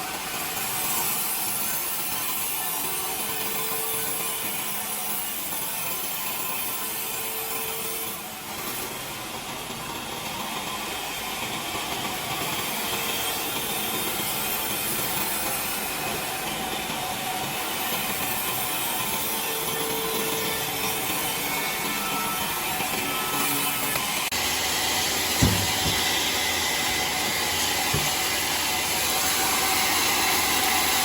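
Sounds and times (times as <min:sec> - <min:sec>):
saw cutting through log: 0:00.0 - 0:31.0.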